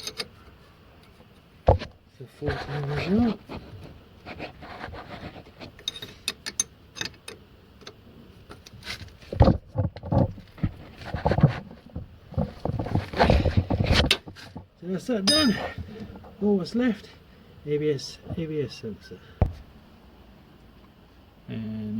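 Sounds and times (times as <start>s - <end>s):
spanner clicking on metal: 0.0s - 0.3s, 5.8s - 8.0s.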